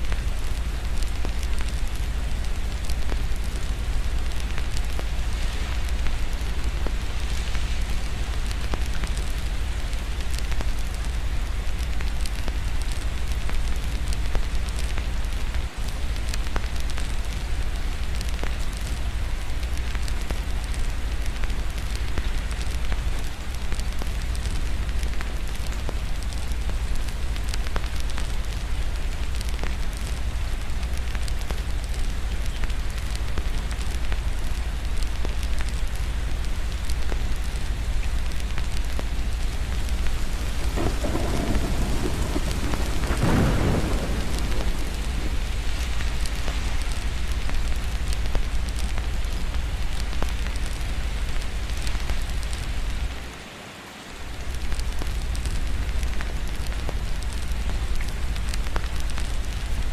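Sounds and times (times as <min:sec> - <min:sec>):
steady rain: 0:00.0 - 0:59.9
thunder rolling: 0:39.6 - 0:47.7.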